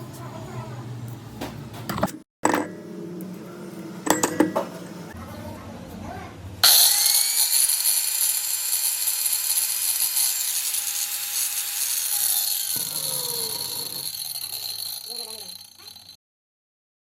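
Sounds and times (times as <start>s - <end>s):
angle grinder whining: 6.6s - 16.2s.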